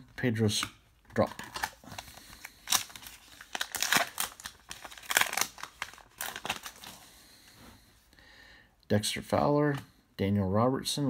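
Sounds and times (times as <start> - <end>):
card pack wrapper crinkling: 1.1 - 7.1.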